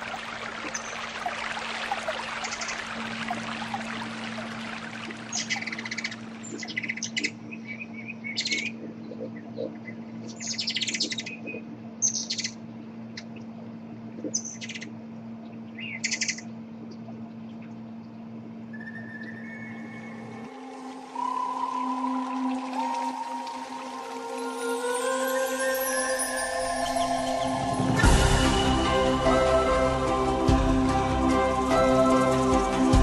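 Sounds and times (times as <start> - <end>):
songbird chirping: 5.2 - 13.4, 18.7 - 32.8
held musical note: 19.8 - 33.0.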